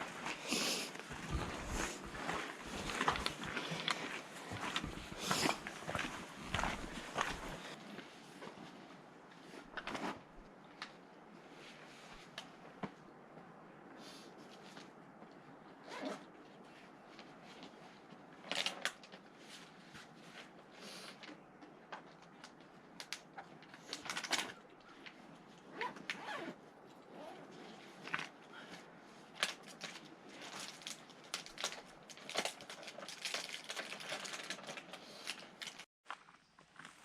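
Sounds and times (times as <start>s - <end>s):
footsteps on rocky trail: 0.0s - 7.8s.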